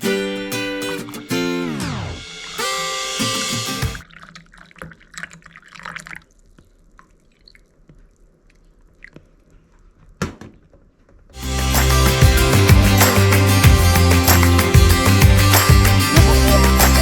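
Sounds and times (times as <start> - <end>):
guitar music: 0.0 - 4.0, 11.4 - 17.0
water dripping: 4.0 - 9.6.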